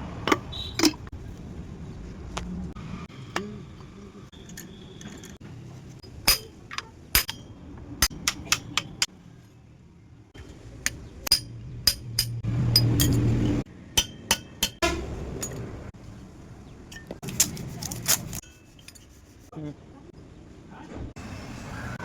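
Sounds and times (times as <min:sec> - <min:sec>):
hand tools clinking on metal: 0:06.0 - 0:09.1, 0:10.8 - 0:15.8.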